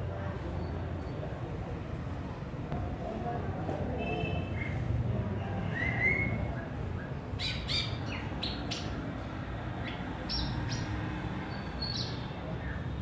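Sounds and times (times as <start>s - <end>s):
starling calling: 5.7s - 9.0s, 9.8s - 12.8s.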